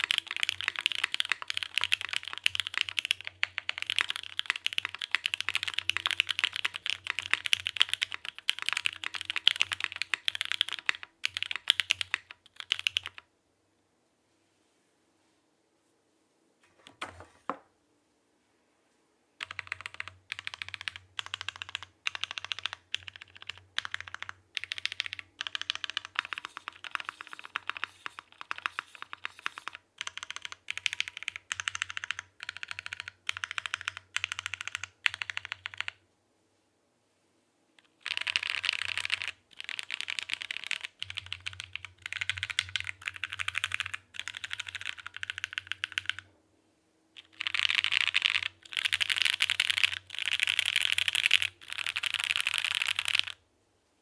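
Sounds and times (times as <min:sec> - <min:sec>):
mechanical keyboard typing: 0:00.0 - 0:13.3, 0:19.4 - 0:36.0, 0:37.8 - 0:46.3, 0:47.2 - 0:53.4.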